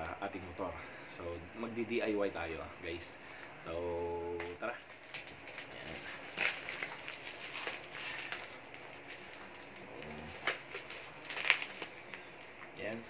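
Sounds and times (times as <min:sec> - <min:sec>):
plastic packaging crinkling: 0:04.8 - 0:12.7.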